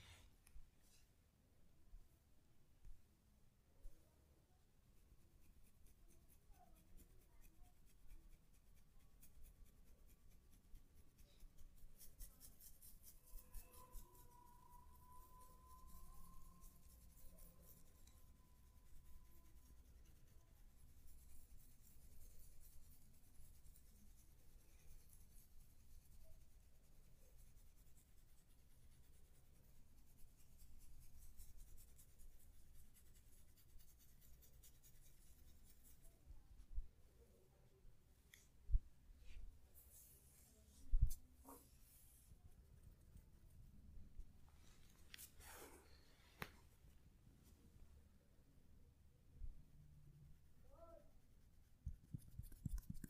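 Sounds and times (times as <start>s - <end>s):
faint thin steady tone: 0.0s - 53.0s
hands rubbing a back: 39.2s - 42.4s, 44.6s - 46.8s, 51.8s - 53.0s.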